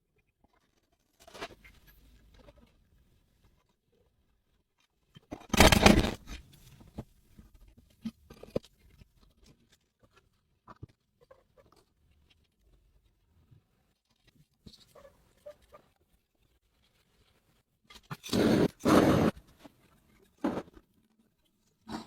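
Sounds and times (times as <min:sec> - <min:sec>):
scraping or rubbing noise: 0:16.9 - 0:20.8.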